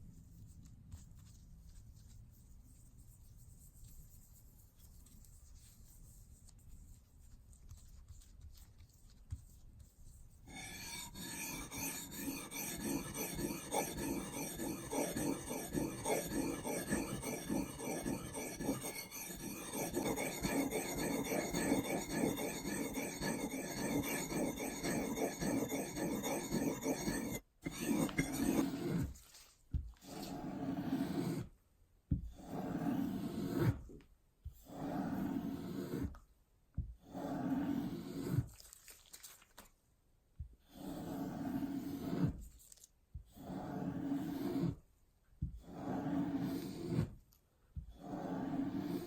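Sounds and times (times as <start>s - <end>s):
abrasive rasping strokes: 10.5s - 29.1s.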